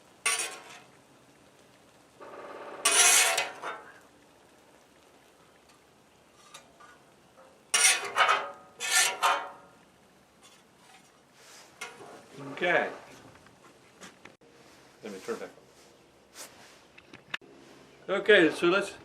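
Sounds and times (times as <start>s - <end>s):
metal spatula scraping griddle: 0.0s - 1.0s, 2.8s - 4.0s, 6.3s - 9.8s, 10.4s - 13.2s.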